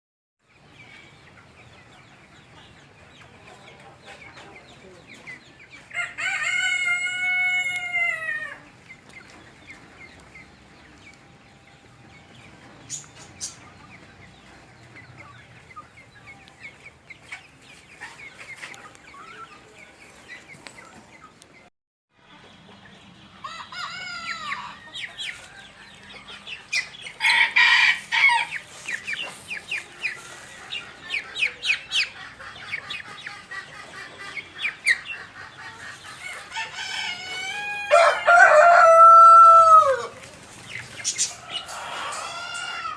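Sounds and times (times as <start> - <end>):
chickens clucking and chirping: 0.4 - 42.9
rooster crowing: 6.0 - 8.6, 23.4 - 25.0, 27.2 - 28.5, 36.4 - 40.2.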